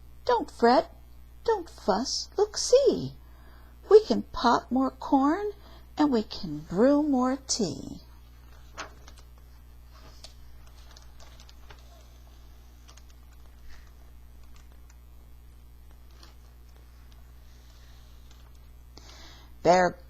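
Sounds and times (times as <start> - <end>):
low electrical hum: 0.0 - 20.0
faint clicks and rustles: 8.2 - 19.0.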